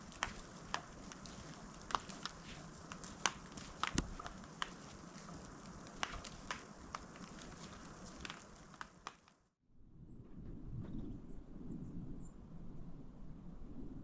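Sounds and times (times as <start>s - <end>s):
low hiss: 0.0s - 9.4s
wood fire crackling and popping: 0.0s - 9.4s.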